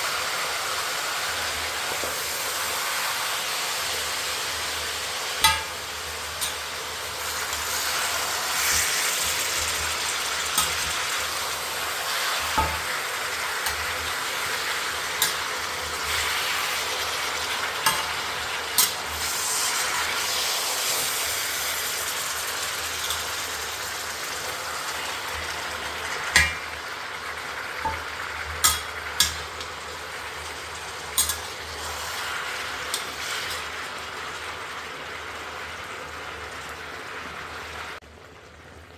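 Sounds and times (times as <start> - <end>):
meat sizzling in a pan: 0.0 - 38.0
sharp knocks of stirring: 12.5 - 12.9.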